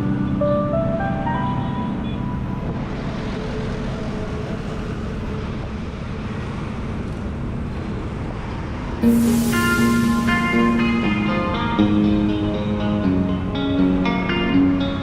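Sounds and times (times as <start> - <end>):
traffic on wet road: 2.5 - 10.9.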